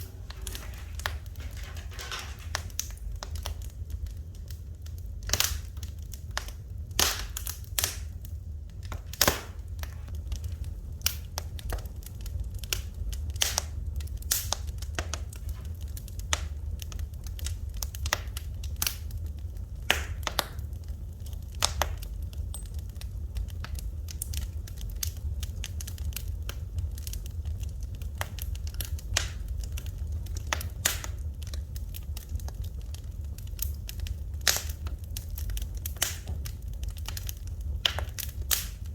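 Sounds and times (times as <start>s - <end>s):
low fire rumble: 0.0s - 38.9s
wood fire crackling: 0.0s - 38.9s.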